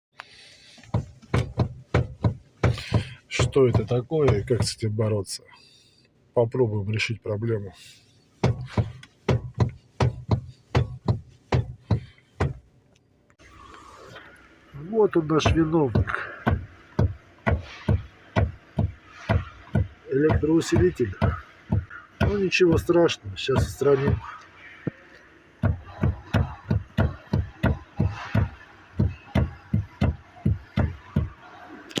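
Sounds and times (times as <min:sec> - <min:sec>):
heavy dull thumps: 0:00.8 - 0:05.0, 0:08.4 - 0:12.7, 0:15.4 - 0:25.0, 0:25.6 - 0:31.4
power steering knocking: 0:00.8 - 0:05.0, 0:08.4 - 0:12.7, 0:15.2 - 0:32.0.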